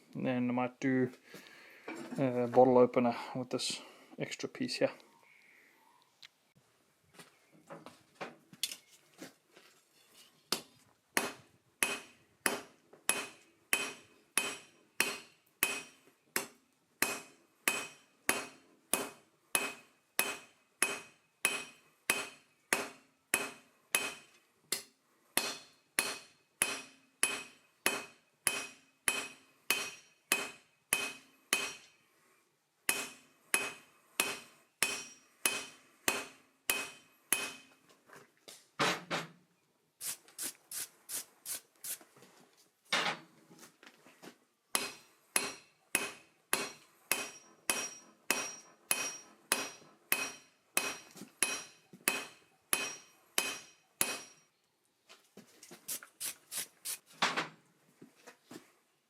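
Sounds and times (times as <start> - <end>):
hammer striking steel on anvil: 10.5 - 32.0, 32.9 - 37.8, 44.8 - 54.4.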